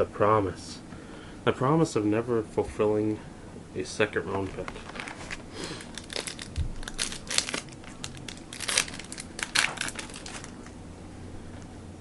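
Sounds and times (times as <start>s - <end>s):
plastic wrapper crinkling and tearing: 4.4s - 10.8s.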